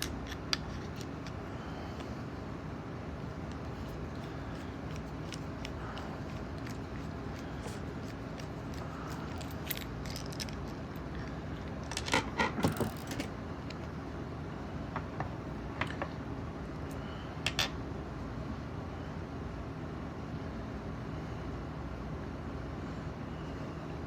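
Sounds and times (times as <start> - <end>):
steady low hum: 0.0 - 24.0
padlocks and lock picks clinking: 3.5 - 11.1.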